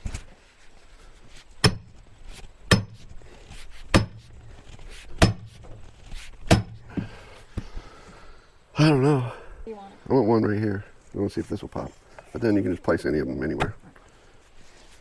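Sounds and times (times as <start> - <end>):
maul striking steel wedge: 1.6 - 2.0, 2.7 - 3.2, 3.9 - 4.4, 5.1 - 5.8, 6.4 - 6.9.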